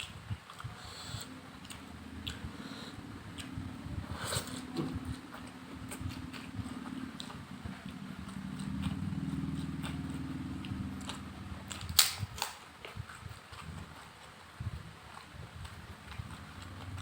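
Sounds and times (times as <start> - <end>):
chewing: 0.0 - 17.0
low drone: 0.6 - 12.6, 16.0 - 17.0
sharp loud clicks: 11.7 - 12.6.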